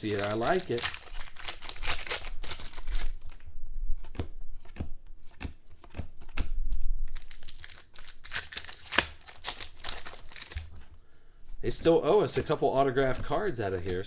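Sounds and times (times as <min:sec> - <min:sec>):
wrapper crinkling: 0:00.0 - 0:03.4, 0:07.1 - 0:10.9
cards being handled: 0:00.0 - 0:14.0.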